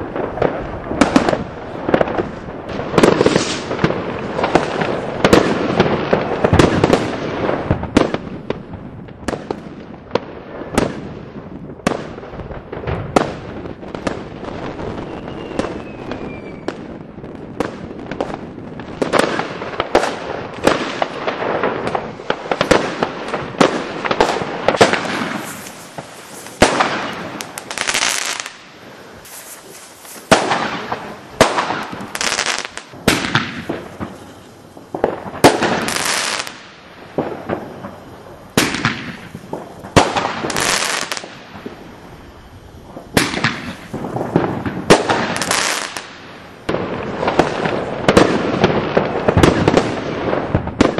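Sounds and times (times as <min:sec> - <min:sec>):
fireworks bangs and crackling: 0:00.0 - 0:50.9
falling firework whistle: 0:14.0 - 0:18.3, 0:19.0 - 0:50.9.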